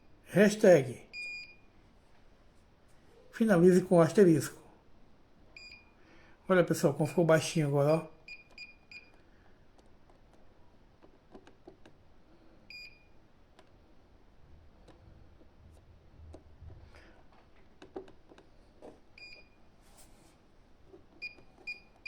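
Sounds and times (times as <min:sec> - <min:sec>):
quiet key beeps: 0:01.1 - 0:01.7, 0:05.6 - 0:06.0, 0:08.2 - 0:09.2, 0:12.7 - 0:13.2, 0:19.2 - 0:19.7, 0:21.2 - 0:22.0.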